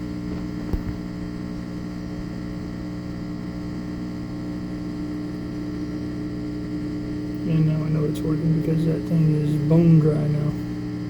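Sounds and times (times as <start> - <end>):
washing machine humming: 0.0 - 11.0.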